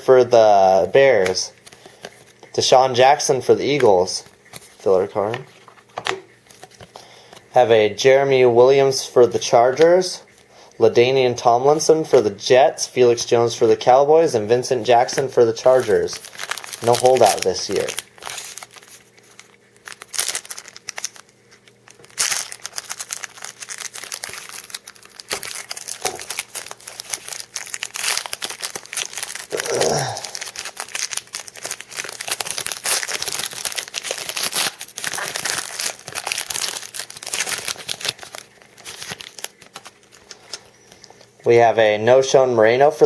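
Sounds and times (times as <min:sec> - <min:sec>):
foil wrapper crinkling and tearing: 0:14.8 - 0:41.2.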